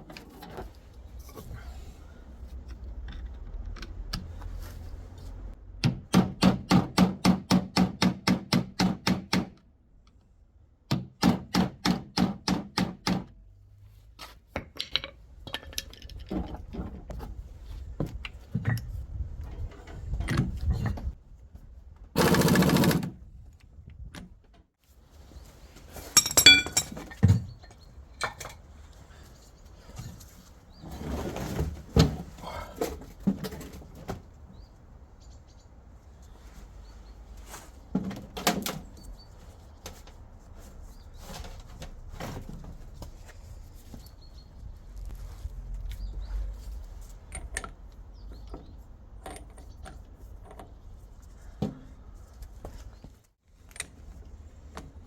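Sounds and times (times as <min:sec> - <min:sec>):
metal clinks: 0:26.2 - 0:27.0.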